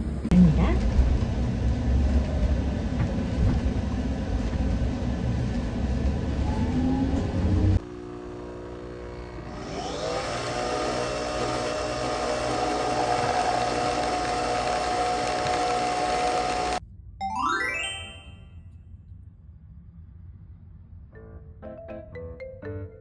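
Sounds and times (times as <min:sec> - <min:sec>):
rising chime-like run: 0:17.2 - 0:18.6.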